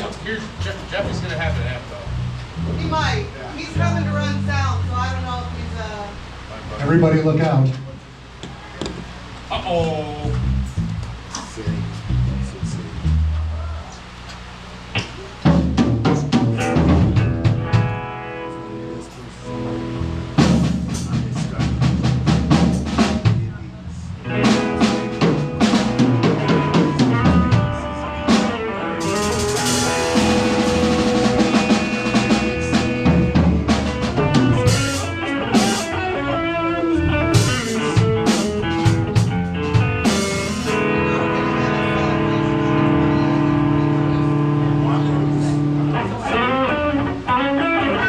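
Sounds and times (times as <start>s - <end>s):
live band playing: 0.0s - 6.4s, 9.8s - 13.6s, 15.0s - 48.0s
drum rimshots and bass drum: 15.0s - 18.0s, 20.0s - 23.8s, 24.4s - 36.1s, 37.2s - 40.8s.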